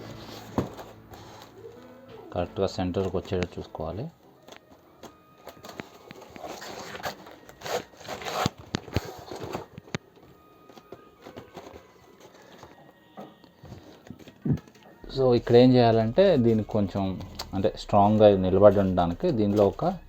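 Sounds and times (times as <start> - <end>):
foam board rustling and scraping: 0.0 - 1.9, 5.4 - 9.8.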